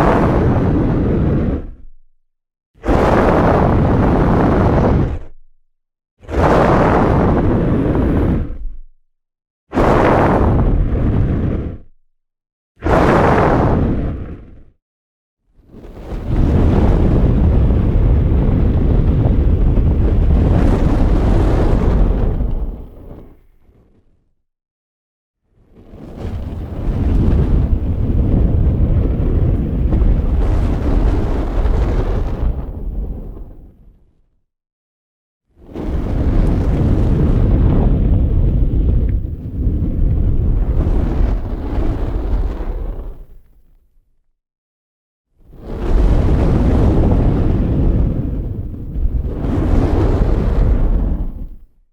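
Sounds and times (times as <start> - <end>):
roar of flames: 0.0 - 2.0, 2.8 - 5.4, 6.2 - 8.9, 9.7 - 12.0, 12.8 - 14.8, 15.6 - 24.3, 25.6 - 34.2, 35.6 - 43.7, 45.5 - 51.7
fire rumbling: 16.0 - 23.8, 26.1 - 33.8, 35.8 - 43.4, 45.8 - 51.7.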